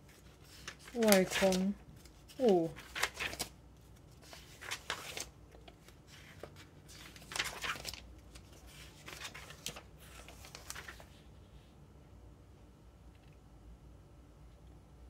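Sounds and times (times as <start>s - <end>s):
paper rustling: 0.0s - 11.2s.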